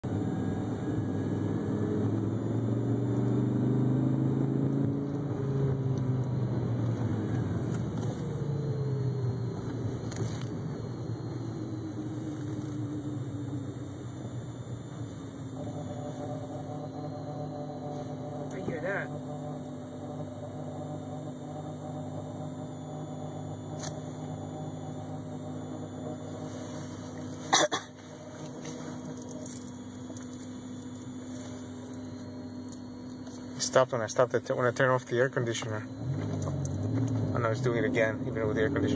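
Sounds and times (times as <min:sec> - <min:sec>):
car buzzing: 0:00.0 - 0:38.9.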